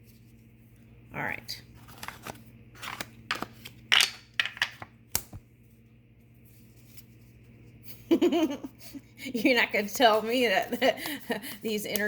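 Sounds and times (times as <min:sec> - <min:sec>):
cards snapping and tapping: 0:02.0 - 0:05.4.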